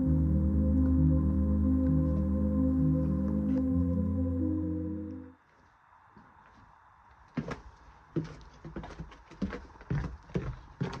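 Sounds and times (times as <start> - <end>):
steady low drone: 0.0 - 5.3
slow ambient synth chords: 0.0 - 5.4.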